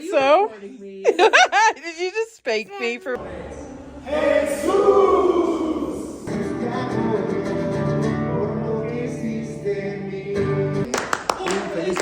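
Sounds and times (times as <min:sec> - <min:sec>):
person singing: 0:03.2 - 0:11.9
plucked guitar: 0:06.2 - 0:10.9.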